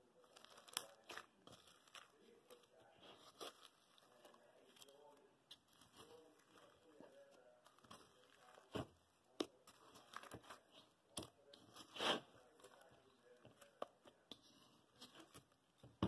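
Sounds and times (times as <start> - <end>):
slime crackling and popping: 0.4 - 2.0.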